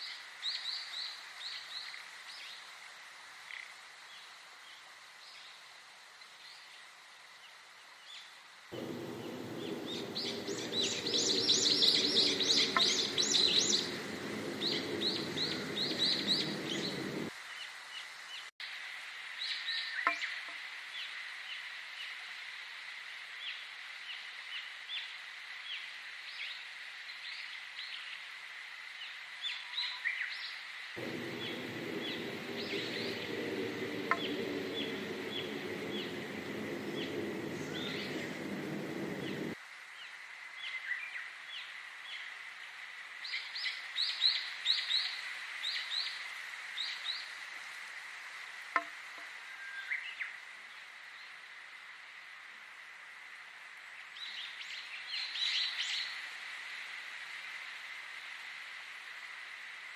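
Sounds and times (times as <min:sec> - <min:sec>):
low hum: 0:08.8 - 0:17.3, 0:31.0 - 0:39.6
small birds chirping: 0:08.8 - 0:17.3, 0:31.0 - 0:39.6.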